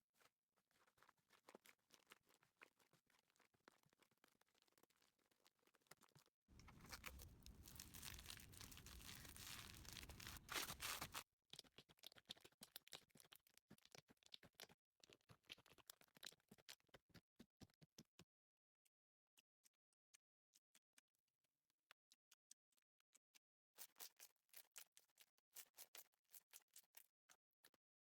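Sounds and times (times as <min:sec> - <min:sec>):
slime crackling and popping: 0:06.6 - 0:11.2.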